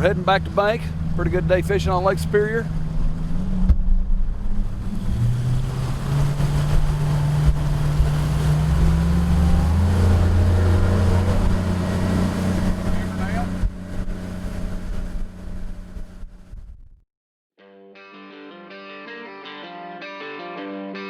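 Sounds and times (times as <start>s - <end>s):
motorboat engine running: 0.0s - 16.8s
rushing water noise: 4.4s - 15.7s.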